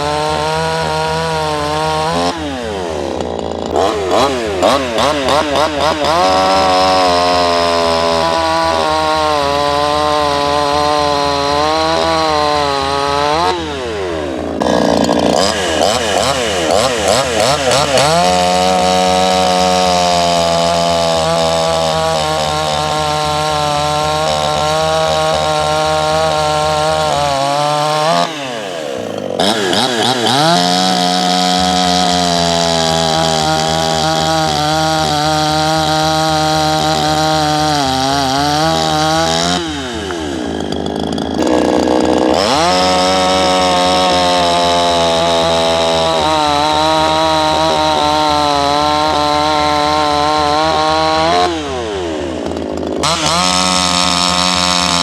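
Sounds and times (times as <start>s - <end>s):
chainsaw running at high revs: 0.0s - 55.0s.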